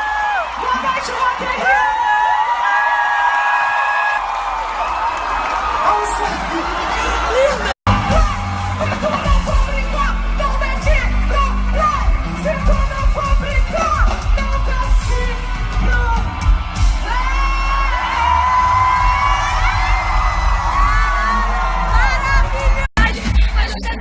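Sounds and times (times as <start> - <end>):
crowd yelling along: 0.0 - 22.9
live pop music: 5.8 - 24.0.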